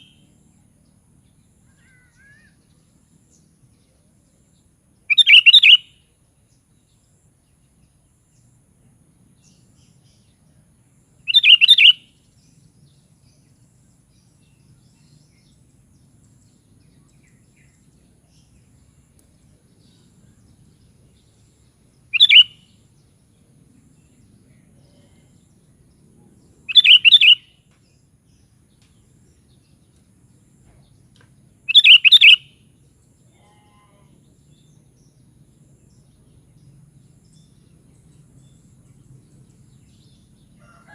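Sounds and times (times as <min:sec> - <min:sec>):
bulbul chirping calls: 0:05.1 - 0:06.0, 0:11.3 - 0:12.1, 0:22.1 - 0:22.8, 0:26.6 - 0:27.6, 0:31.7 - 0:32.6.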